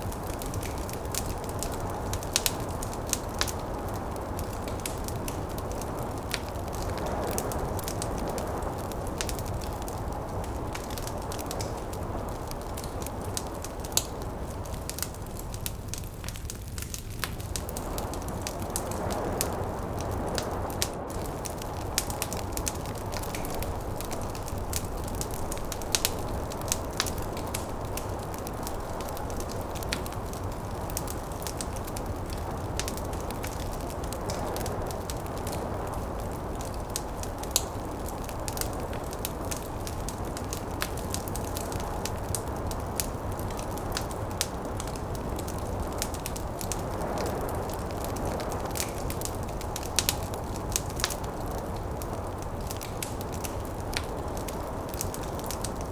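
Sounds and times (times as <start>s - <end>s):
wood fire crackling and popping: 0.0s - 55.9s
snowstorm wind rushing: 17.3s - 52.6s.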